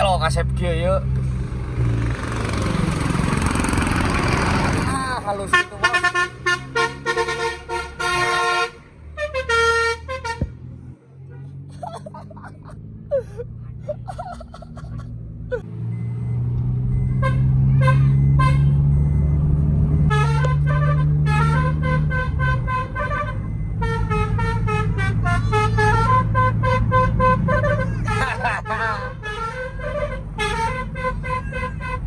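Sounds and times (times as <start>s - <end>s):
vehicle engine droning: 0.0s - 32.0s
multi-tone musical vehicle horn: 5.5s - 10.6s, 17.2s - 18.9s, 20.1s - 32.0s.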